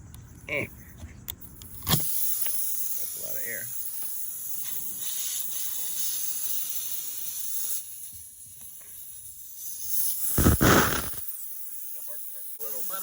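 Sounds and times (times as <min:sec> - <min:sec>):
air hissing from tyre puncture: 0:01.7 - 0:11.5.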